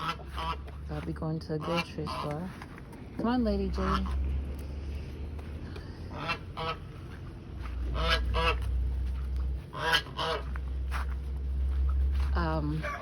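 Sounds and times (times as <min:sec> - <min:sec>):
goose honking: 0:00.0 - 0:02.6, 0:03.6 - 0:04.2, 0:06.1 - 0:11.1.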